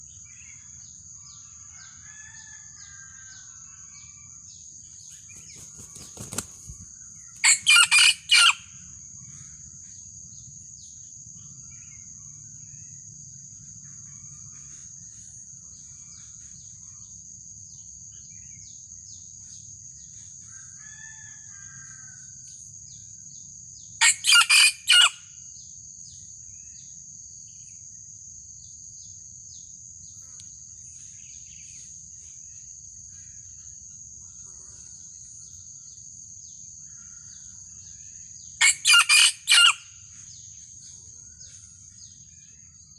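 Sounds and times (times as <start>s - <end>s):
high insect drone: 0.0s - 42.9s
rooster crowing: 1.7s - 3.6s, 7.4s - 8.6s, 20.5s - 22.3s, 24.0s - 25.2s, 38.6s - 39.8s
wing flapping: 5.1s - 8.3s.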